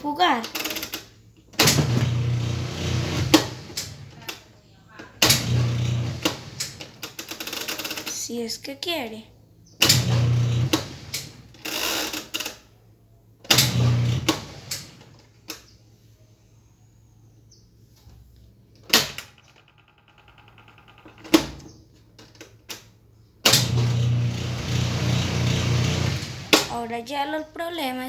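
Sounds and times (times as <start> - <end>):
low motor hum: 1.6 - 4.1, 5.2 - 6.8, 10.0 - 11.4, 23.6 - 27.5.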